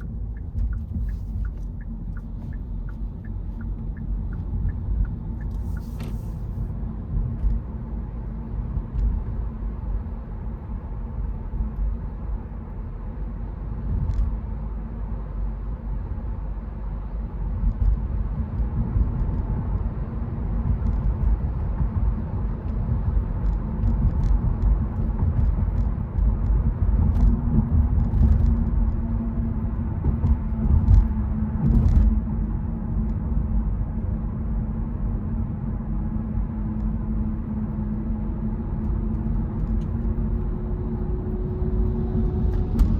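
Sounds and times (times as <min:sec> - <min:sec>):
car driving on wet road: 0:00.0 - 0:07.7.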